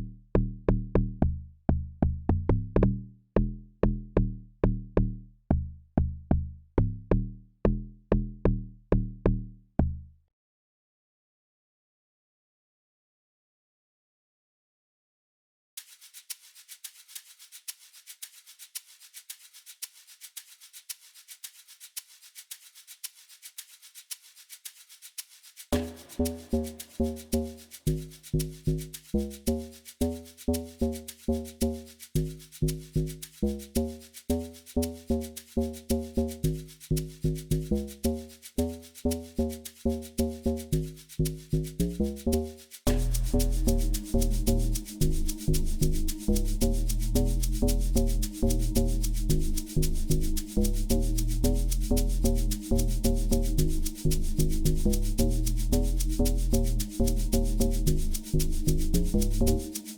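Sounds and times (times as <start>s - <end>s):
bouncy bass and melody notes: 0.0s - 9.6s, 25.8s - 59.9s
fast shaker loop: 15.8s - 59.9s.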